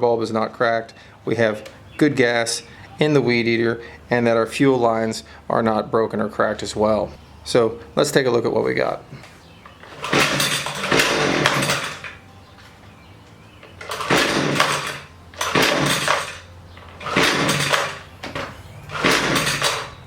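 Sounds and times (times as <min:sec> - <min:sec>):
string trimmer engine revving: 0:09.8 - 0:12.2, 0:13.8 - 0:20.0.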